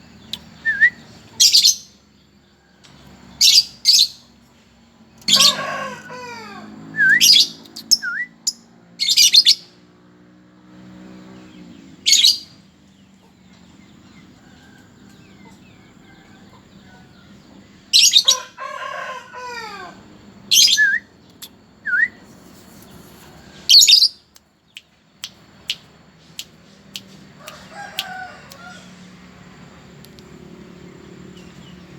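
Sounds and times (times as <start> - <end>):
whistling: 0.6 - 1.1, 6.9 - 8.5, 20.6 - 21.2, 21.8 - 22.3
lovebirds chirping: 20.5 - 29.0.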